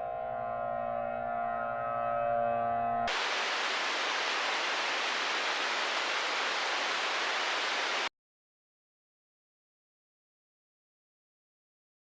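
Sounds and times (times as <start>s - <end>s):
static hiss: 3.1s - 8.1s.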